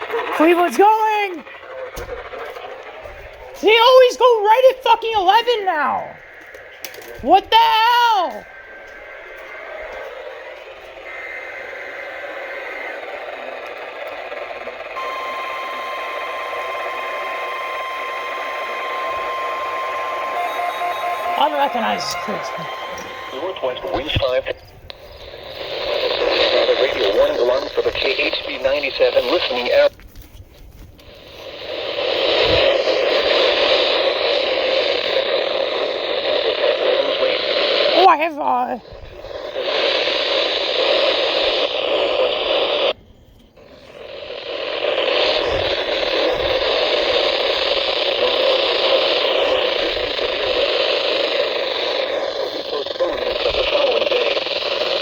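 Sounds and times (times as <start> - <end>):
steady warning alarm tone: 0.0 - 29.7, 45.2 - 55.0
radio static hiss: 0.0 - 55.0.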